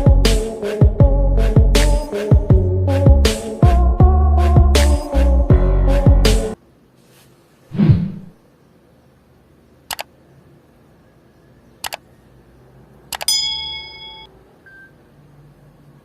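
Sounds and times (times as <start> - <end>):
music playback: 0.0 - 6.6
sharp clicks: 9.9 - 10.1, 11.8 - 12.0, 13.1 - 13.3.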